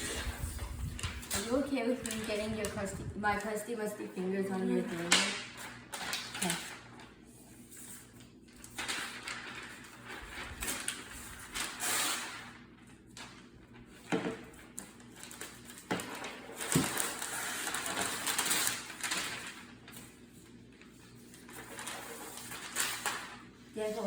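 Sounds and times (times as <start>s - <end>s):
packaging rustling: 0.0s - 3.6s, 7.8s - 23.6s.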